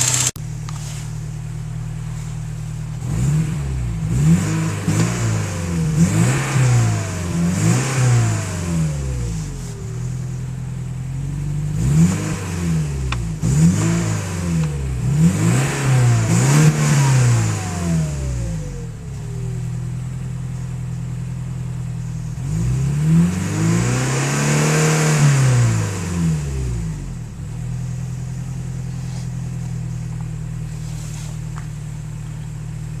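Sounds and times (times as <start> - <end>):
turbocharger whine: 0.0 - 2.1, 2.8 - 28.7
car engine idling and revving: 0.0 - 33.0.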